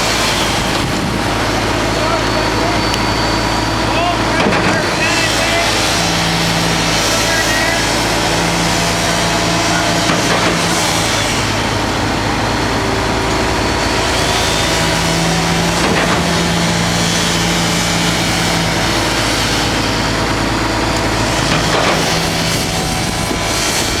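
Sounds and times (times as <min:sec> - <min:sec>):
machinery engine running: 0:00.0 - 0:24.0
sharp knocks: 0:09.5 - 0:11.6, 0:15.1 - 0:17.2, 0:21.4 - 0:22.7.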